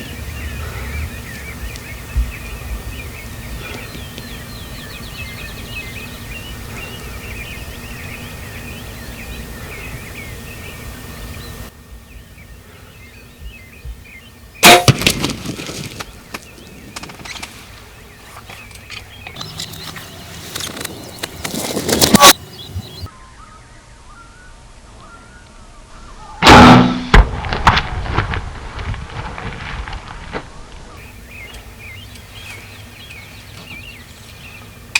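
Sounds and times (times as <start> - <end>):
small birds singing: 0.0 - 26.4, 30.9 - 34.9
loud sudden noise bursts: 26.4 - 28.7.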